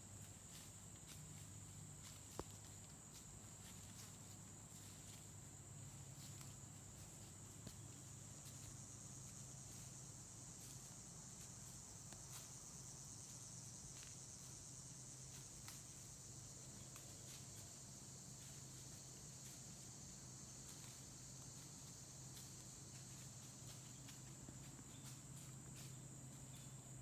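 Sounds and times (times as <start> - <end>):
high-pitched insect chorus: 0.0 - 27.0
faint ticks: 2.0 - 3.2.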